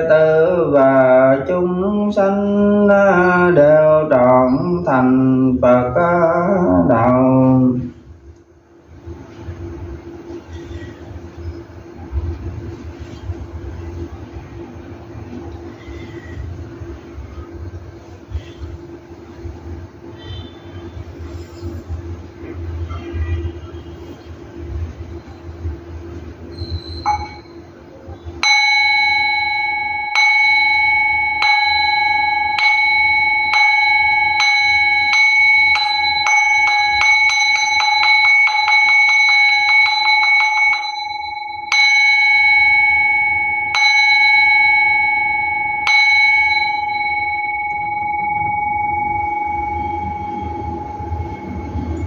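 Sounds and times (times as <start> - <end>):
bell strikes ringing: 26.5 - 27.7, 28.4 - 52.0.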